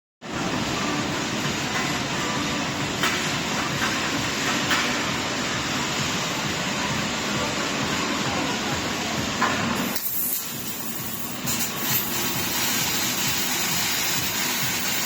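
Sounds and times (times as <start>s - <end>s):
laser cutting machine rushing: 9.8s - 15.0s.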